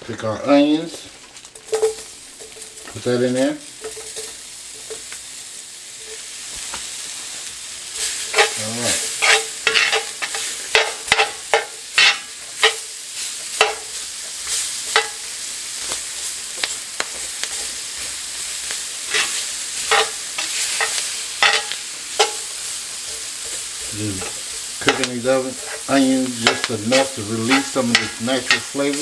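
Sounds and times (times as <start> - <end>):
onions sizzling in a skillet: 0.2 - 29.0
utensil scraping a pan: 7.9 - 12.8, 18.9 - 29.0.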